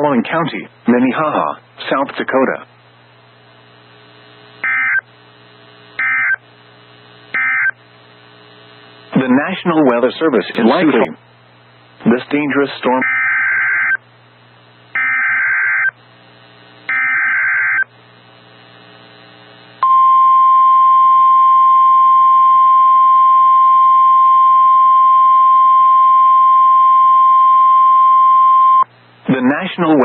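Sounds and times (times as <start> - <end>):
steady high alarm tone: 6.0 - 6.4, 7.4 - 7.8, 13.0 - 14.0, 15.0 - 15.9, 16.9 - 17.8.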